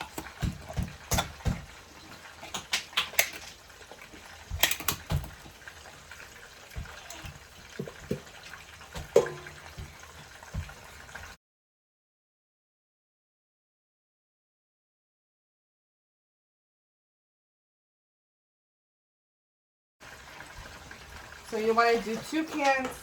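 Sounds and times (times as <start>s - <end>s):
kitchen clicks knocks and clatter: 0.0s - 11.4s.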